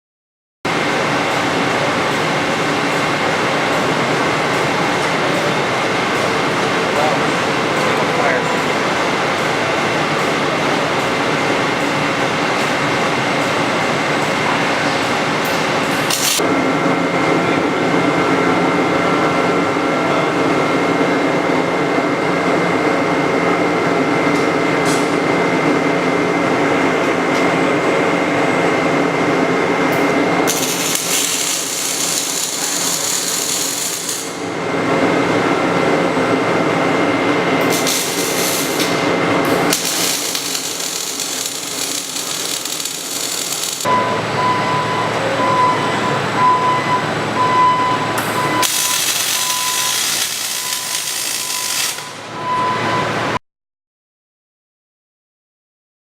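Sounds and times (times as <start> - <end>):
steady high whine: 0.7 - 53.4
welding arc crackle: 16.0 - 16.4, 30.5 - 34.5, 37.6 - 43.9, 48.6 - 52.2.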